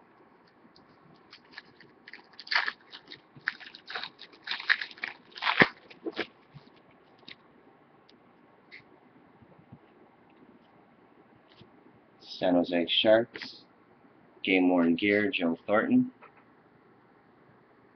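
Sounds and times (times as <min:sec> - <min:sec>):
wrapper tearing and crinkling: 0:01.3 - 0:07.4.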